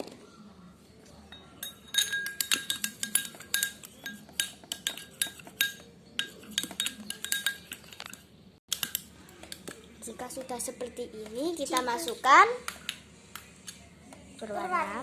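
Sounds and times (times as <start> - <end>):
spoon clinking on glass bowl: 1.3 - 9.0.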